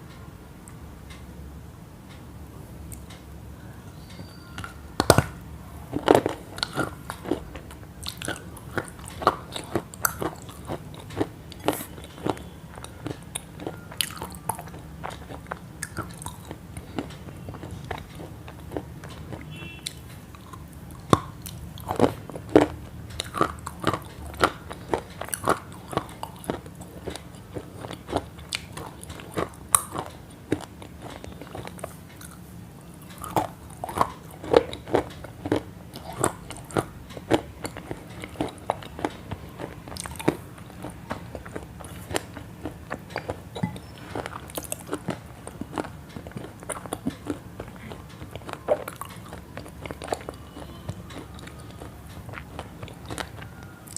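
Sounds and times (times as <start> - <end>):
crunchy food chewing: 4.0 - 53.9.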